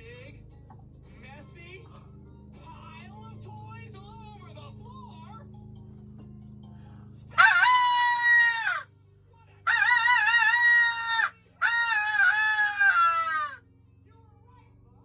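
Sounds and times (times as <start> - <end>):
rooster crowing: 7.4 - 8.9, 9.7 - 13.6.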